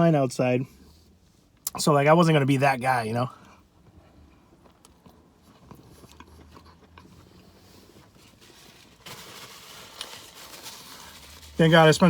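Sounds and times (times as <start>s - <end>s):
person chewing: 4.3s - 8.2s.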